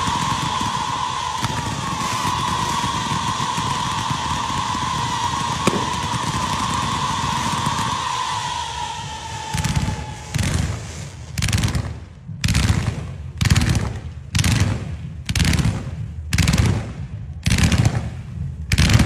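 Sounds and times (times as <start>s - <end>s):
firework whistle: 0.0s - 12.1s
fireworks crackling bursts: 0.0s - 19.0s.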